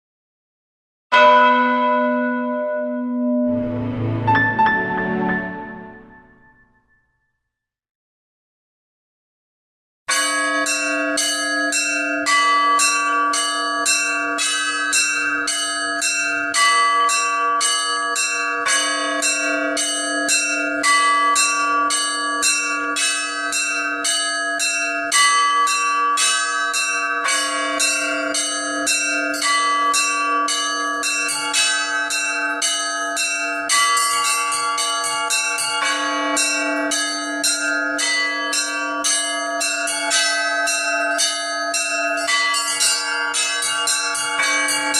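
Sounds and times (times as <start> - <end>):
small church bells striking: 1.1 - 6.1, 10.1 - 44.9
large bell ringing: 1.1 - 6.8, 10.1 - 44.9.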